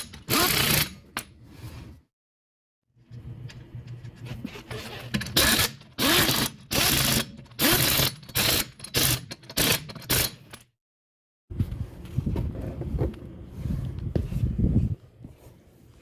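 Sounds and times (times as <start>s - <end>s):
mechanical ratcheting bursts: 5.4s - 10.4s.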